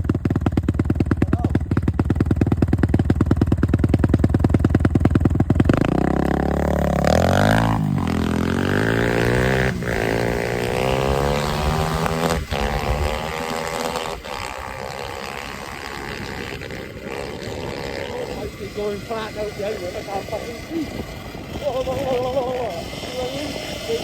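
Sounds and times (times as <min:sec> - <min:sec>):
tyre noise: 0:00.0 - 0:24.0
rushing wind: 0:05.7 - 0:24.0
electric motor whine: 0:05.8 - 0:24.0.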